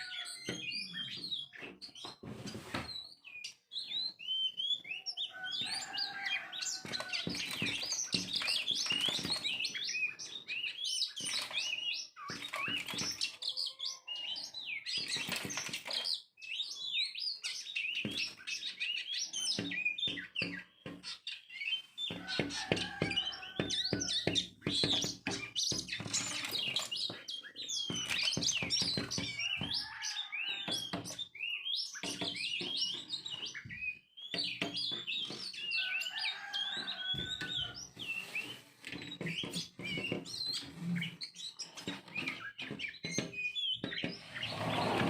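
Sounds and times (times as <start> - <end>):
birds chirping and tweeting: 0.0 - 45.0.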